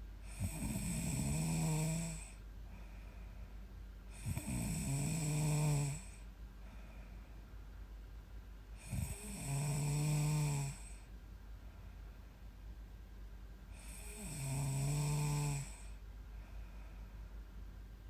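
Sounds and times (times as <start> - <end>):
woman snoring: 0.3 - 2.4, 4.1 - 6.2, 8.8 - 11.1, 13.7 - 16.0.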